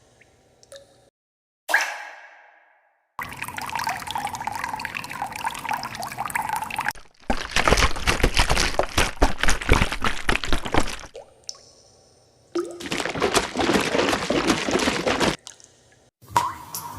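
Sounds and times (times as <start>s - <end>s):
water pouring and splashing: 3.2s - 11.6s, 12.6s - 15.8s.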